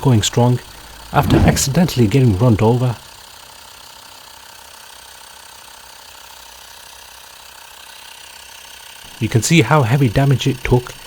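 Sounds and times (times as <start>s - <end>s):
air compressor pump rattling: 0.8s - 2.9s.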